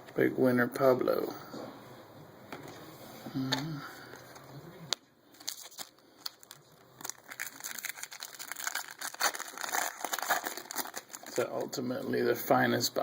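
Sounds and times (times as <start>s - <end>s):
foil wrapper tearing and crinkling: 5.4s - 11.5s.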